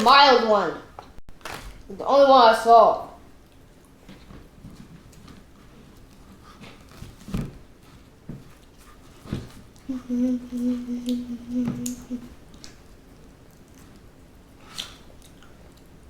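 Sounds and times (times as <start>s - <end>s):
person humming: 9.9s - 12.4s.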